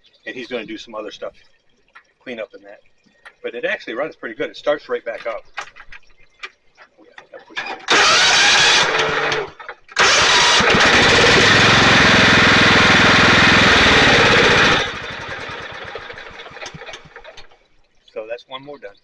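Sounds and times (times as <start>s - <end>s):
lawn tractor engine starting: 7.6s - 17.6s.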